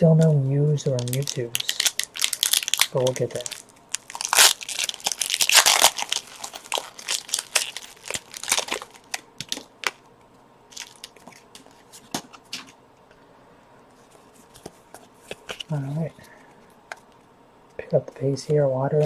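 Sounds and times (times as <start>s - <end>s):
foil wrapper crinkling and tearing: 0.2s - 10.0s, 10.7s - 11.4s.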